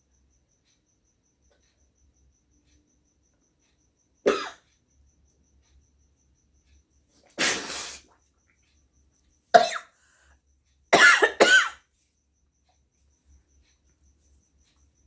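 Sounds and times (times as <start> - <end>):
forced sneezes or coughs: 7.3 - 8.1, 11.0 - 11.8
woman blowing her nose: 7.3 - 8.1.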